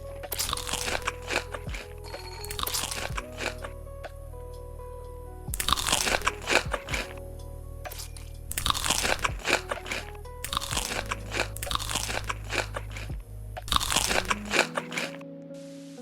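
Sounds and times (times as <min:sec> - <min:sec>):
background music: 0:00.0 - 0:16.0
crisp food crunching: 0:00.3 - 0:03.7, 0:05.6 - 0:07.2, 0:07.9 - 0:13.1, 0:13.7 - 0:15.2.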